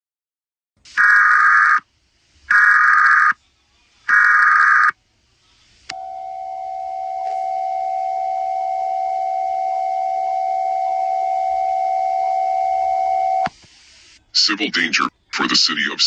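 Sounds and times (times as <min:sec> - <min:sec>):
steady attention tone: 0:05.9 - 0:13.5.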